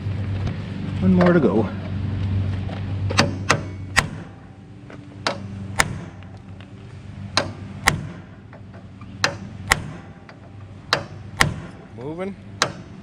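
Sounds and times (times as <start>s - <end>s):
hammer striking steel: 3.2s - 4.5s, 5.2s - 6.2s, 7.3s - 8.4s, 9.2s - 13.0s.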